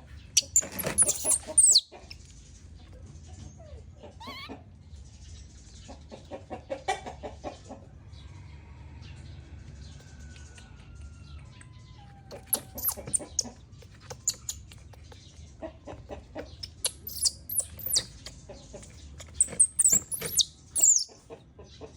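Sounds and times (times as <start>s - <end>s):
baby monkey crying: 0.4s - 1.8s, 4.2s - 4.6s, 12.3s - 13.5s, 16.6s - 18.2s, 19.3s - 21.1s.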